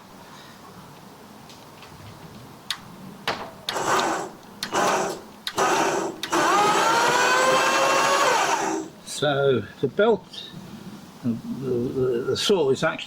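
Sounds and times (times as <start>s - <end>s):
band saw motor running with whine: 3.7s - 9.0s.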